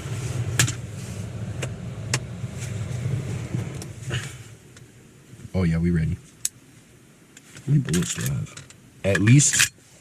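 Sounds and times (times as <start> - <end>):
car engine running: 0.0 - 4.8.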